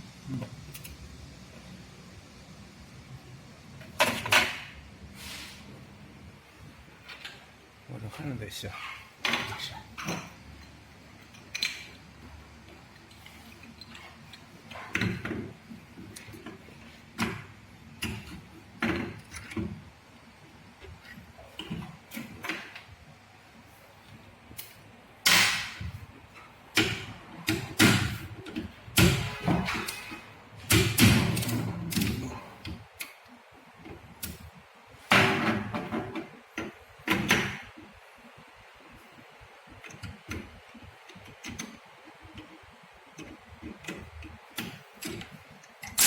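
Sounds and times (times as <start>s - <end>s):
tools and parts knocking on bench: 35.1s - 37.7s.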